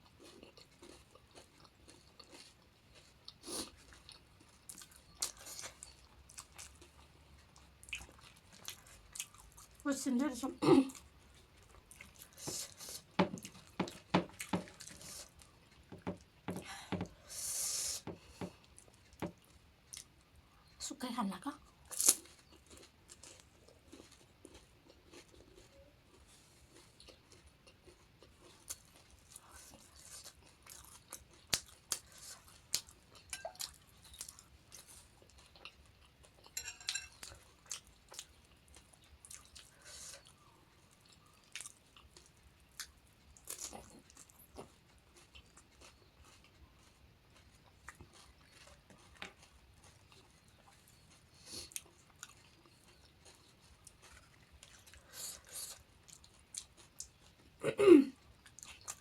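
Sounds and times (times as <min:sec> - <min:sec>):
crunchy chewing: 0:00.0 - 0:09.8, 0:21.6 - 0:57.6.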